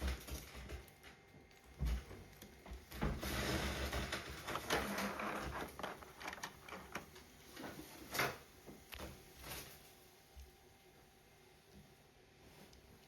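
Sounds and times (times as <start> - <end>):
packaging rustling: 3.4 - 7.7.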